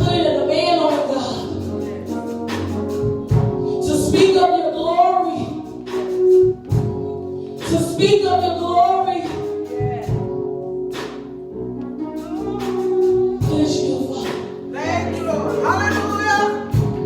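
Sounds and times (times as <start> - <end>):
sustained instrumental chords: 0.0 - 17.0
person singing: 12.2 - 17.0.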